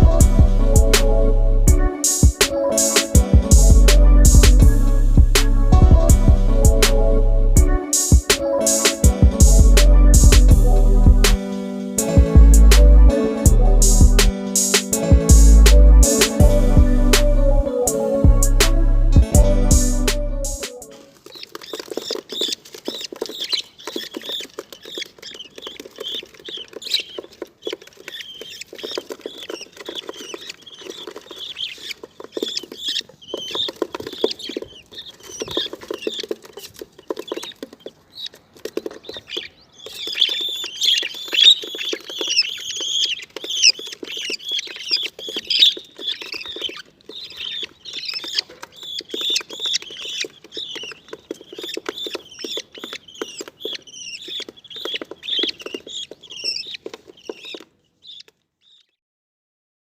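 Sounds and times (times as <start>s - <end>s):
budgerigars chirping: 21.3s - 59.0s.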